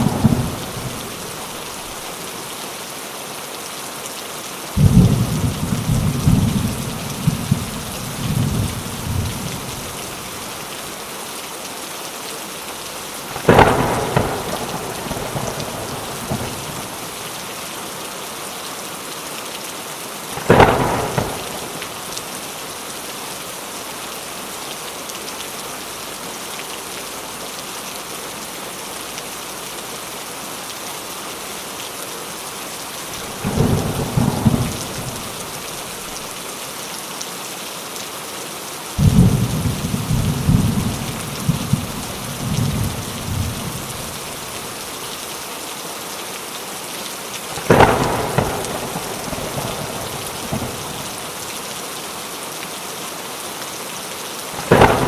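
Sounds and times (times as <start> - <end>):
rolling thunder rumble: 0.0 - 1.2, 4.8 - 10.5, 13.4 - 17.0, 20.4 - 22.1, 33.2 - 35.6, 39.0 - 44.8, 47.6 - 51.2, 54.6 - 55.0
steady rain: 0.0 - 55.0
sharp thunderclap: 13.4 - 17.0, 20.4 - 22.0, 33.2 - 35.6, 39.0 - 44.6, 47.6 - 51.1, 54.6 - 55.0.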